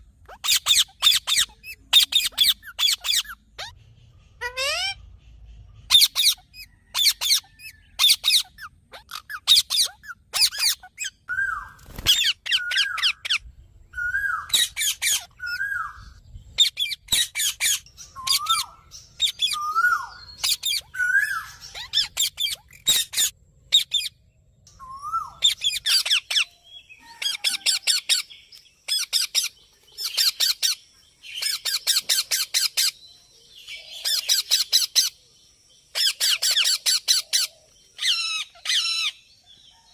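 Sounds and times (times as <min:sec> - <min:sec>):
parakeet squawking: 0:00.3 - 0:03.8, 0:04.4 - 0:05.0, 0:05.9 - 0:11.2, 0:12.0 - 0:13.5, 0:14.3 - 0:15.8, 0:16.6 - 0:24.1, 0:25.4 - 0:26.5.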